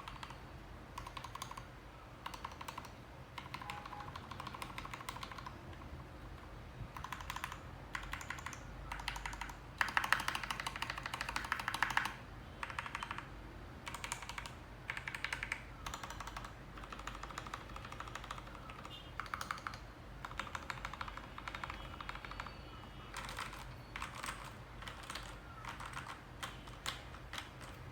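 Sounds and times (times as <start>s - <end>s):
mechanical keyboard typing: 0.0s - 27.9s.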